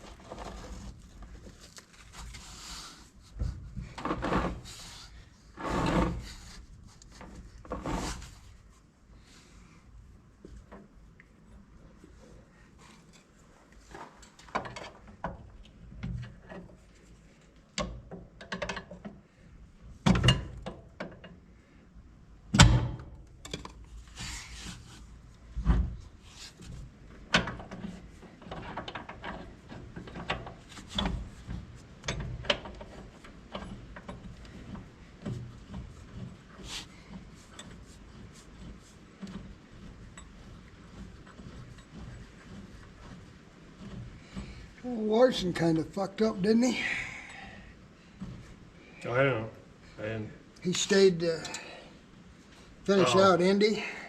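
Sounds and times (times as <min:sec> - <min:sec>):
hand tools and metal parts clunking: 0:12.8 - 0:19.2, 0:25.6 - 0:49.0, 0:50.6 - 0:52.0.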